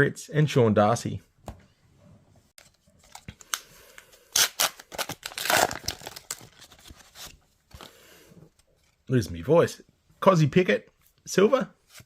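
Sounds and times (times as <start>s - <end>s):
foil wrapper tearing and crinkling: 4.3s - 6.8s.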